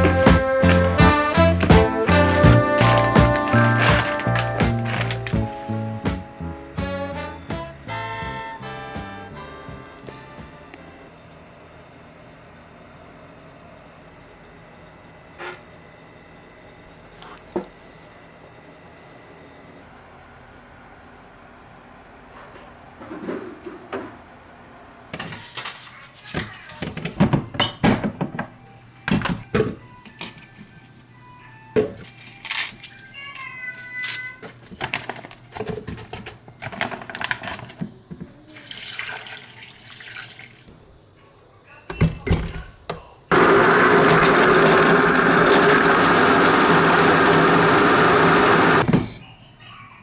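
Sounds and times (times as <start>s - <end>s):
packaging rustling: 0.0s - 5.9s
small electric motor running: 43.3s - 48.8s.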